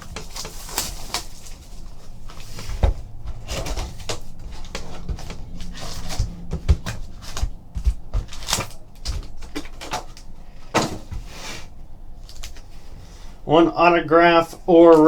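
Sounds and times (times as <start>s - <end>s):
cardboard clicks and knocks: 0.0s - 11.4s
card packs rustling: 0.0s - 13.5s.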